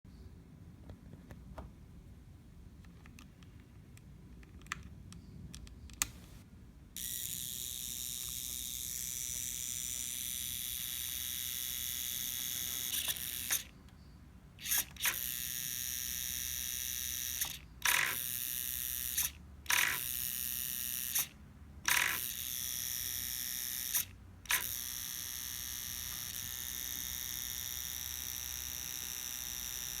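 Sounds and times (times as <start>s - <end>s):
sharp servo clicks: 7.0s - 13.8s, 14.6s - 30.0s.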